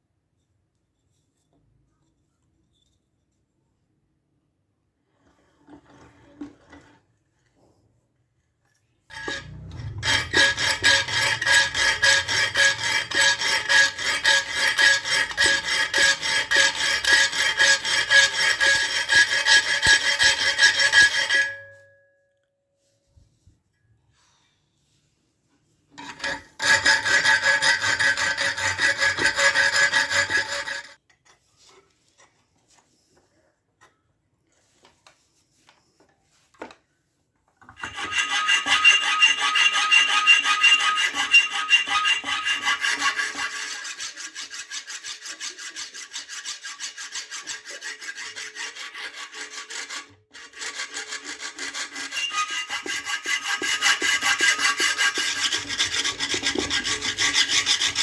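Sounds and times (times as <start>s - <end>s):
knife blade rasped by abrasive: 9.1s - 21.7s, 26.1s - 31.0s, 37.8s - 58.0s.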